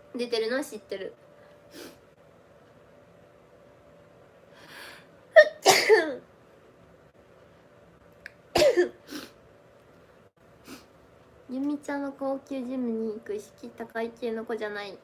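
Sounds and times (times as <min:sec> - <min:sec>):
woman sneezing: 0:05.4 - 0:06.2.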